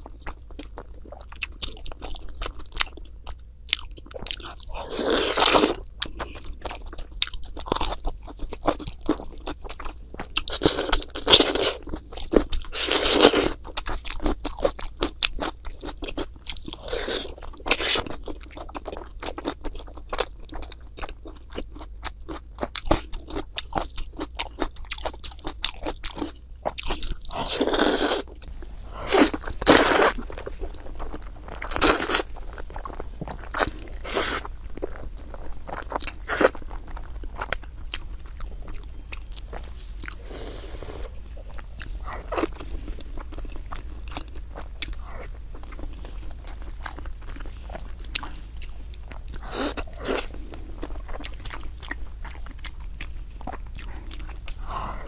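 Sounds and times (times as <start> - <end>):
chewing with wet mouth clicks: 0.0 - 55.0
crunchy bites: 27.0 - 55.0.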